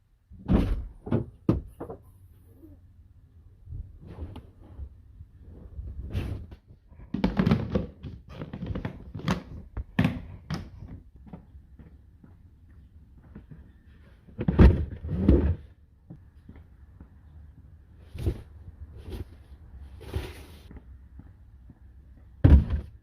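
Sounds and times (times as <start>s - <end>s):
knocks and thuds: 0.4s - 2.0s, 22.4s - 23.0s.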